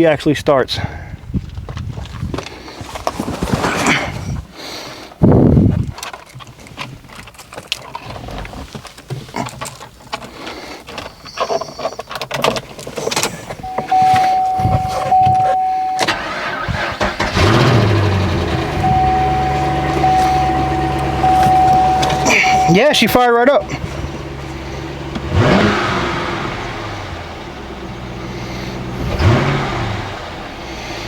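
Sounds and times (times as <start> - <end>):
clicks and handling noises: 5.8 - 16.1, 18.8 - 22.9
car engine starting and idling: 12.6 - 31.0
electronic warning tone: 13.6 - 17.2, 18.5 - 23.3.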